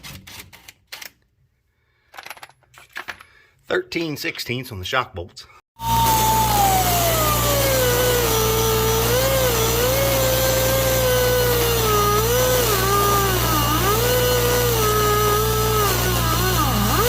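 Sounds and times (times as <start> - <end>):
cut-off wheel cutting metal: 5.8 - 17.0.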